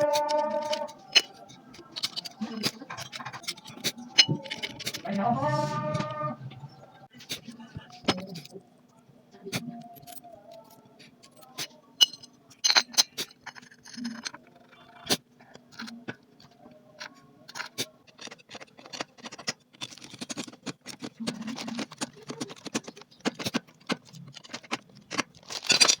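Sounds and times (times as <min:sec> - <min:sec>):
metal tools clinking: 0:00.0 - 0:05.1, 0:11.2 - 0:14.7, 0:25.4 - 0:26.0.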